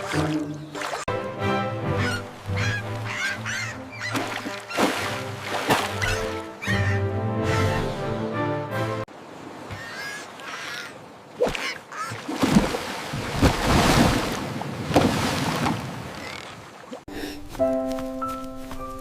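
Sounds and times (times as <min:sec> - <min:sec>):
music: 0:00.0 - 0:09.1, 0:17.1 - 0:19.0
rushing water: 0:00.0 - 0:17.1.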